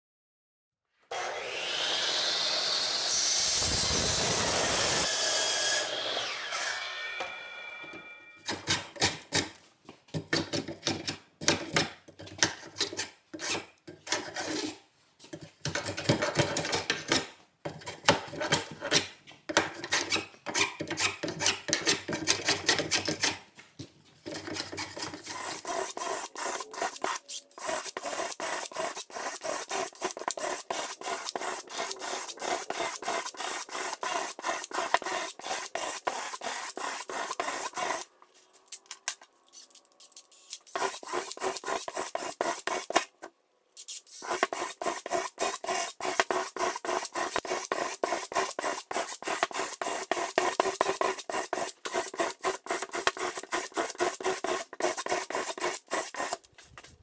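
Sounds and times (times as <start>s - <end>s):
hand tool scraping wood: 24.2s - 38.1s, 39.5s - 57.0s.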